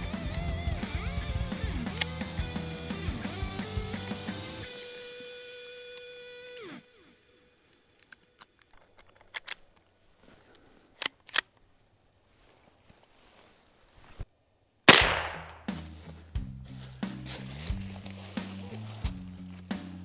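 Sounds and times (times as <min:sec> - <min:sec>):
gunshot with echo: 0:14.9 - 0:15.8.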